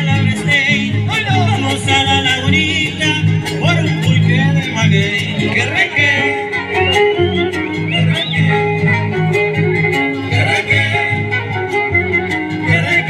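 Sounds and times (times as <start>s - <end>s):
bass line: 0.0s - 13.0s
plucked guitars: 0.0s - 13.0s
pitch-bending melody: 0.2s - 13.0s.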